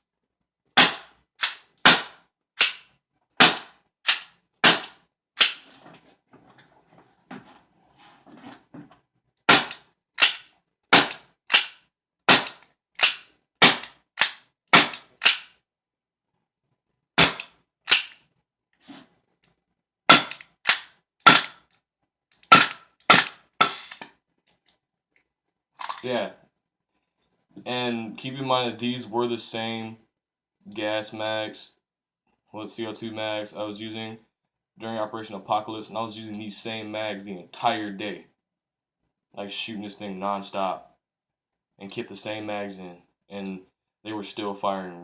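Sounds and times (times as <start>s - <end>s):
airsoft pistol shots: 0.8s - 2.8s, 3.4s - 5.6s, 9.5s - 10.4s, 11.0s - 15.5s, 17.2s - 18.2s, 20.1s - 21.6s, 22.5s - 23.9s.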